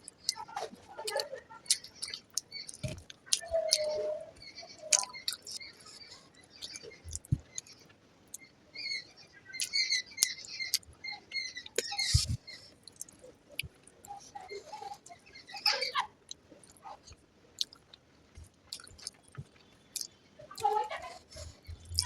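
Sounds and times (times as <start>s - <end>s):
lip smacks: 0.0s - 8.4s, 11.6s - 15.1s, 16.3s - 22.0s
mouth clicks: 0.0s - 8.5s, 9.6s - 10.9s, 11.5s - 22.0s
wet chewing: 0.0s - 8.5s, 9.6s - 22.0s.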